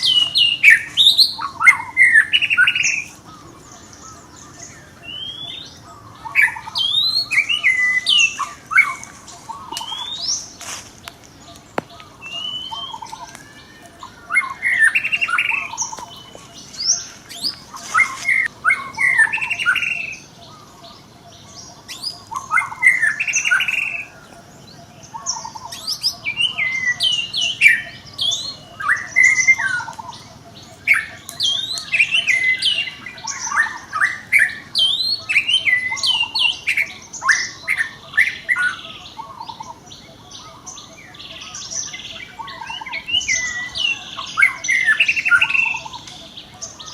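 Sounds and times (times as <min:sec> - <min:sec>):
monkeys squealing: 0:12.2 - 0:20.9.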